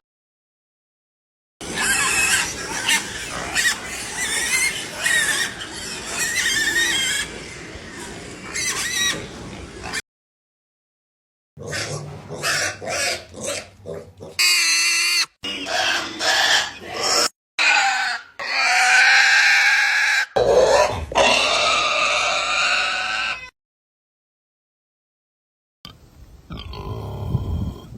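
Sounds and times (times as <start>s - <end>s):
pig grunting: 1.6s - 10.0s, 11.6s - 14.6s, 15.4s - 19.7s, 26.5s - 27.9s
pig squealing: 1.6s - 10.0s, 11.6s - 23.6s.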